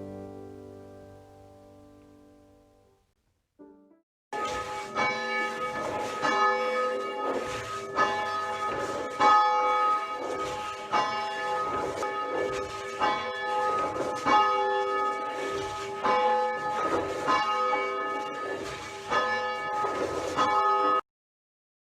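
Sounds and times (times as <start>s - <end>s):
church bells ringing: 4.4s - 21.0s.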